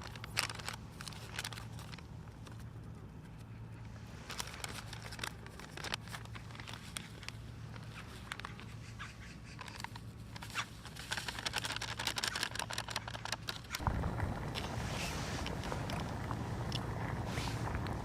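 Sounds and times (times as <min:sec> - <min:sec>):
steady rushing noise: 0:13.8 - 0:18.0.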